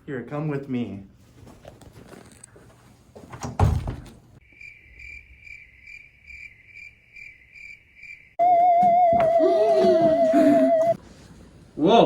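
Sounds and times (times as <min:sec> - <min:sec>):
cricket chirping: 0:04.4 - 0:09.1
wavering musical tone: 0:08.4 - 0:11.0.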